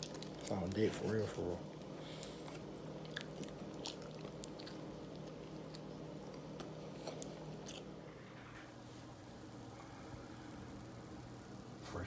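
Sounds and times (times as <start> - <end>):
person chewing sandwich: 0.0 - 8.4
low steady hum: 0.0 - 12.0.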